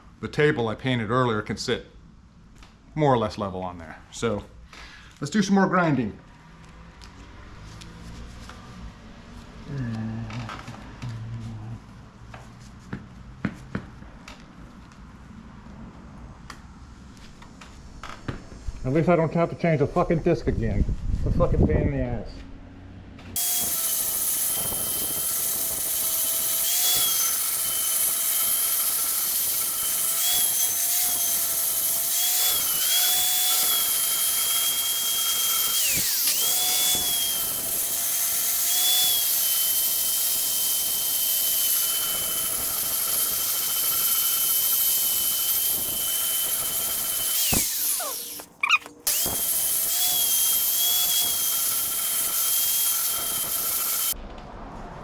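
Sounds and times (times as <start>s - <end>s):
angle grinder grinding steel: 23.4s - 54.2s.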